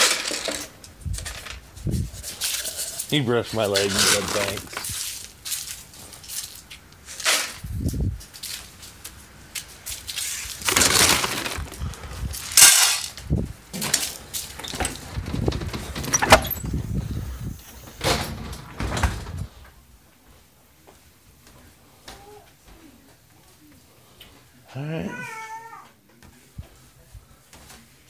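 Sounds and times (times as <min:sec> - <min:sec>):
rustling and scraping handling noises: 0:00.0 - 0:24.5.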